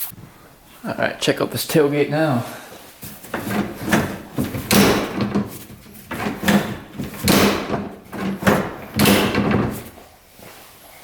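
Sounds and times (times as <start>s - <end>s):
tailgate latch clunks and rattles: 3.1s - 10.0s.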